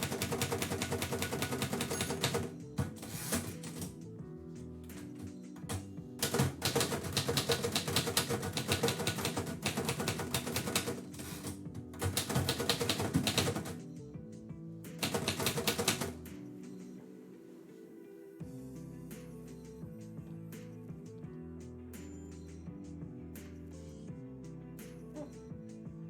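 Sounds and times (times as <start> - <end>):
typewriter keys striking: 0.0 - 3.8, 5.7 - 13.8, 15.0 - 16.2
background music: 0.0 - 26.0.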